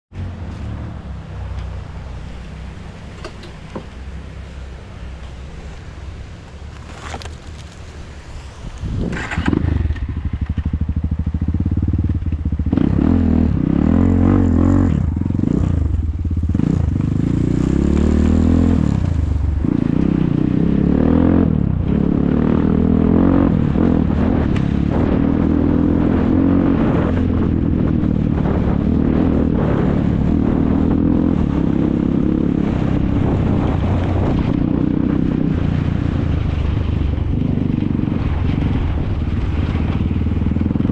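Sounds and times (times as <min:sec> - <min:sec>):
atv engines revving: 0:00.2 - 0:06.7.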